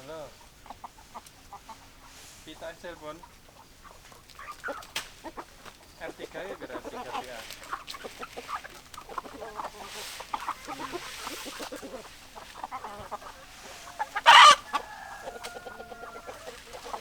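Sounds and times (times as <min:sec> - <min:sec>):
chickens clucking: 0:00.0 - 0:17.0
loud short chicken call: 0:12.9 - 0:16.9.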